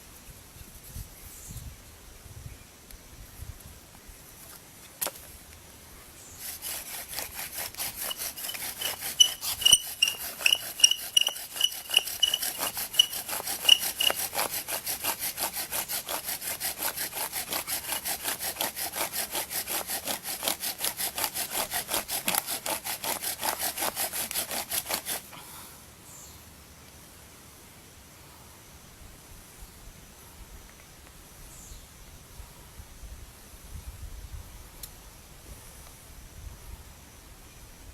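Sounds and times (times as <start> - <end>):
wood sawing against wood: 6.2 - 25.4
high squeaks: 6.6 - 14.5.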